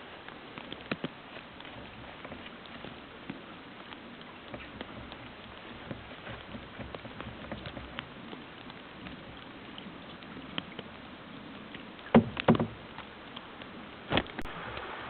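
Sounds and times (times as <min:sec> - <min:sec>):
faint ticks: 0:00.0 - 0:14.5
steady hiss: 0:00.0 - 0:15.0
paddle knocking against canoe hull: 0:00.8 - 0:10.9, 0:11.7 - 0:13.1.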